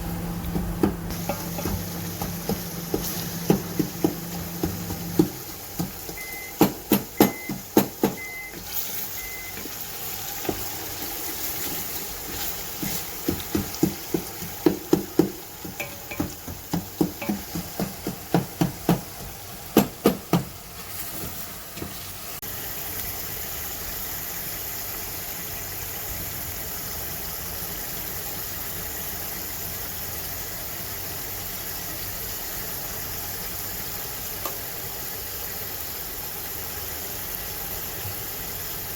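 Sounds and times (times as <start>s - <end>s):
frying sizzle: 0.0s - 38.9s
utensil knocking against pot: 0.5s - 8.3s, 12.8s - 20.6s.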